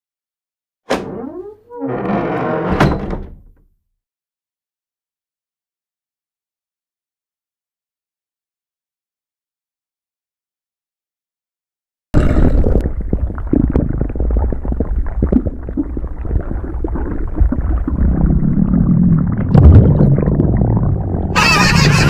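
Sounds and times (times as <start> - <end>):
stomach growling: 12.2 - 21.4.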